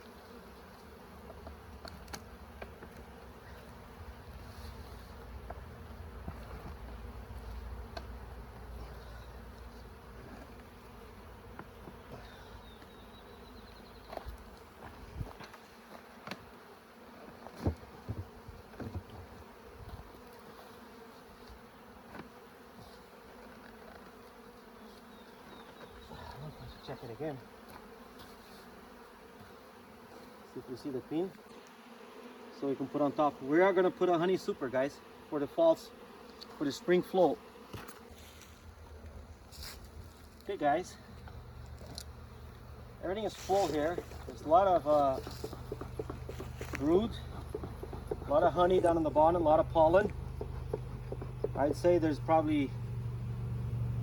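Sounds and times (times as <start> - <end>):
honeybees buzzing: 0.0 - 54.0
sharp knocks and clicks: 45.4 - 46.5, 47.3 - 48.3, 50.1 - 51.8.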